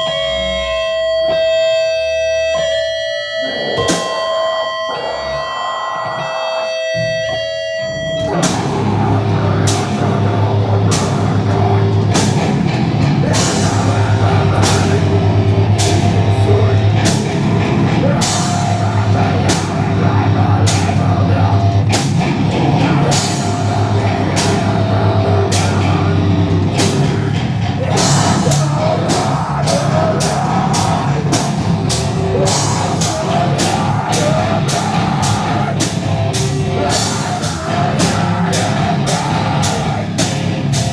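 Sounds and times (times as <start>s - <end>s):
metal band playing live: 3.4s - 4.4s, 5.9s - 40.9s.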